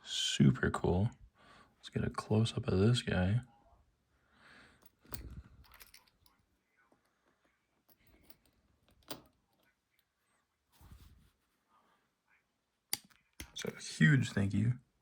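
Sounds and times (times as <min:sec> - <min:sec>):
faint metallic clicks and taps: 0:12.9 - 0:13.9.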